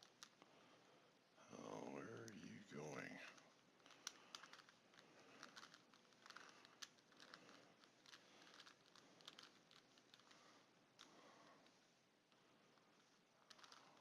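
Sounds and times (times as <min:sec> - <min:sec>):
plastic puzzle cube clicking: 0:00.0 - 0:00.4, 0:03.8 - 0:10.4, 0:13.4 - 0:14.0.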